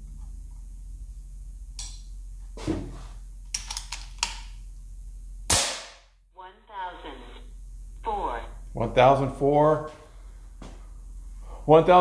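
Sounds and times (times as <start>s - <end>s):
air rifle handling clicks: 3.5s - 4.4s
air rifle shot: 5.5s - 6.1s.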